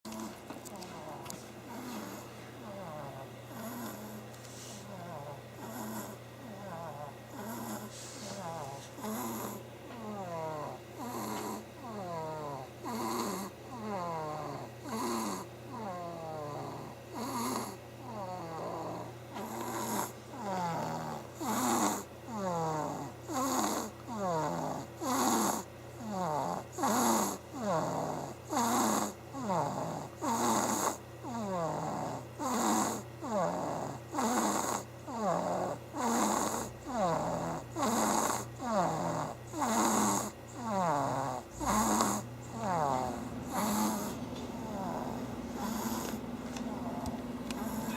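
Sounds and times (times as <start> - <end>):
baby snoring with squeaks: 0.9 - 46.2, 47.6 - 47.9.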